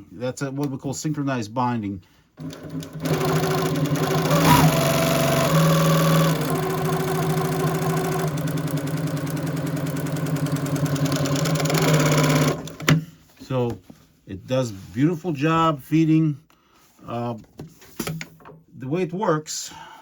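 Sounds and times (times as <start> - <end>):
industrial sewing machine stitching: 2.4 - 13.0.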